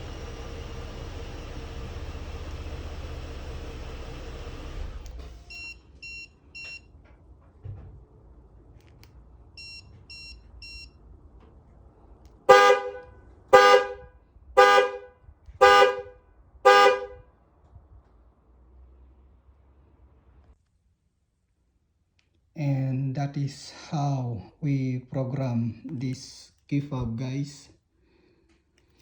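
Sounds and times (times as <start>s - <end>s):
car engine running: 0.0s - 5.5s, 11.0s - 17.2s
car horn honking: 12.4s - 17.3s.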